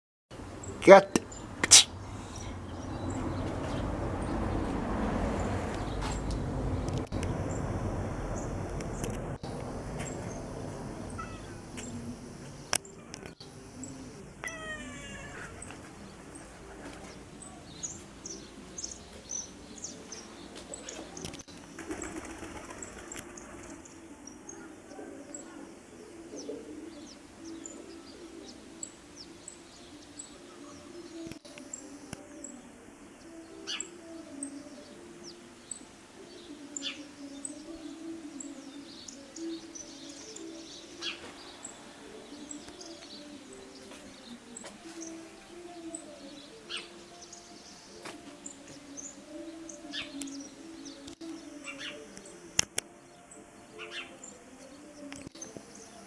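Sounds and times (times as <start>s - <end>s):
small birds chirping: 0.3s - 56.0s
steady low drone: 6.2s - 12.8s.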